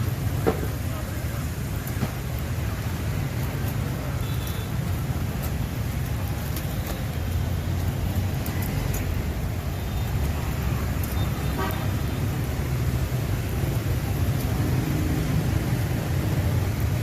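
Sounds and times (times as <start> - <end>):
street traffic rumbling: 0.0 - 17.0
vehicle horn toot: 4.2 - 4.7, 11.2 - 12.2.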